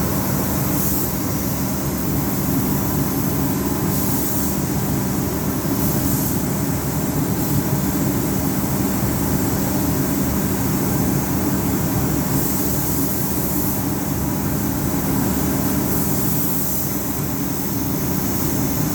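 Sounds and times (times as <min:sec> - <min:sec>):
spray gun air hiss: 0:00.0 - 0:08.6, 0:12.2 - 0:18.9
air compressor humming: 0:00.0 - 0:10.5.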